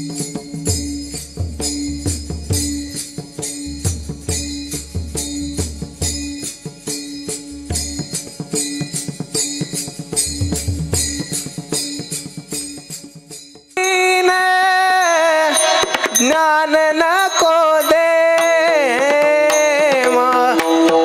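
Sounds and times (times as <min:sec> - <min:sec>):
small hand cymbals striking: 0:00.0 - 0:21.0
held harmonium-like tone: 0:14.4 - 0:21.0.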